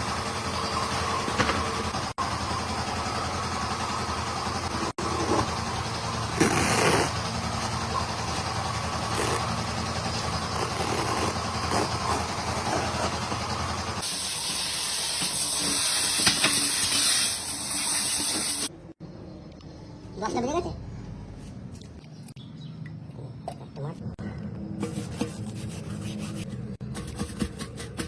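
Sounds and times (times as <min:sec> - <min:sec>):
vehicle engine running: 0:00.0 - 0:14.4.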